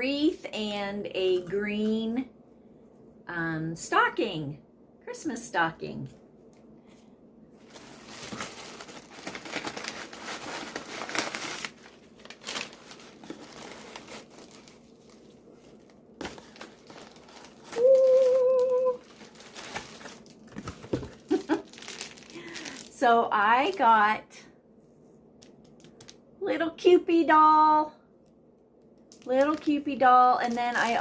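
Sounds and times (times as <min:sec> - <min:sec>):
packing wrap crumpling: 0:07.6 - 0:23.0, 0:29.0 - 0:31.0.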